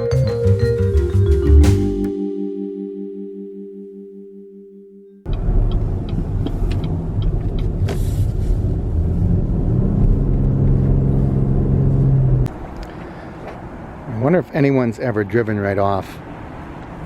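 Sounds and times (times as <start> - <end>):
music: 0.0 - 5.2
car engine and road noise: 5.3 - 14.2, 16.2 - 17.0.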